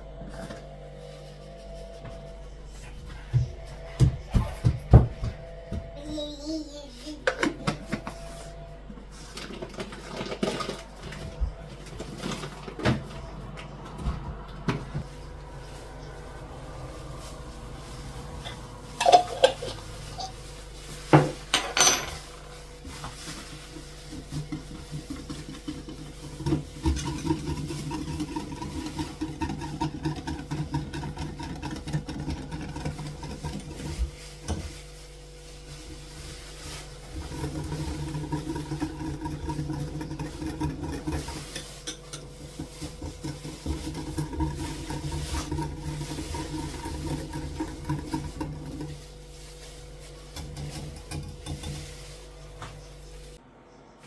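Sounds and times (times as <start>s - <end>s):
utensil mixing in bowl: 7.0s - 53.4s
utensil clinking on bowl: 21.2s - 22.4s.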